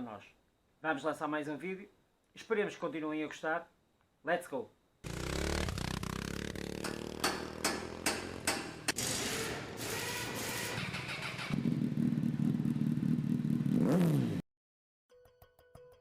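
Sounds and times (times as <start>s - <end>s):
motorcycle engine revving: 5.0s - 14.4s.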